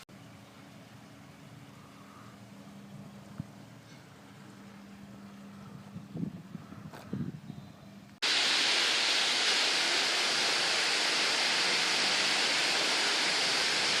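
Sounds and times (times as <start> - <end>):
fountain water splashing: 8.2 - 14.0.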